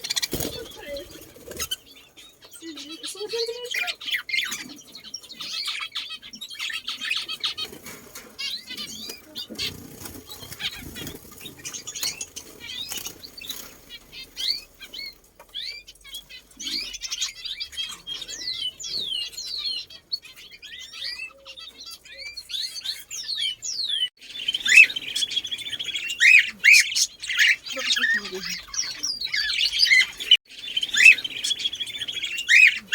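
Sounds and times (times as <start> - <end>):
wings flapping: 0.0 - 1.9, 7.1 - 15.6
small birds chirping: 0.0 - 32.9.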